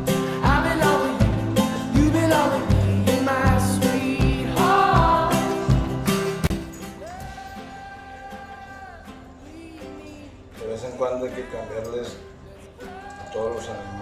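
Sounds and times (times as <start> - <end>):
man singing: 0.0 - 5.7, 7.0 - 10.6
guitar: 0.0 - 14.0
drum beat: 0.5 - 7.4.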